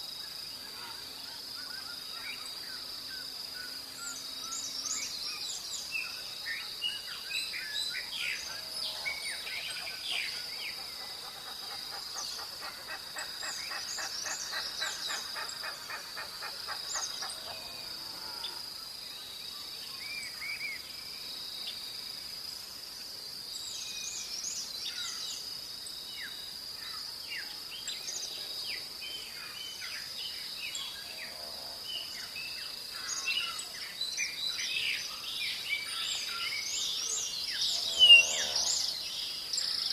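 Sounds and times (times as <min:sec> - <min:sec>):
songbirds chirping and whistling: 0:01.7 - 0:17.8, 0:32.0 - 0:39.9.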